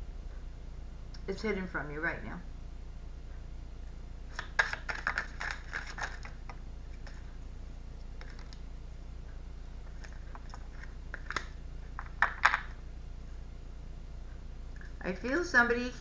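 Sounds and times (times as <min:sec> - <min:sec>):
steady low hum: 0:00.0 - 0:16.0
hands handling small objects: 0:04.4 - 0:07.2, 0:08.2 - 0:08.6.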